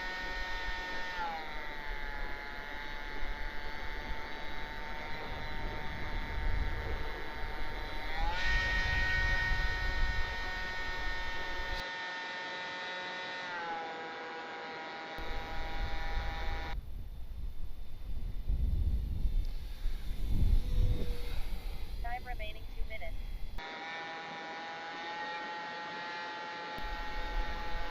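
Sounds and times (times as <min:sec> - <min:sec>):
model plane electric motor whining: 0:00.0 - 0:16.8, 0:18.5 - 0:27.9
wind rumble on microphone: 0:01.9 - 0:11.8, 0:15.2 - 0:23.6.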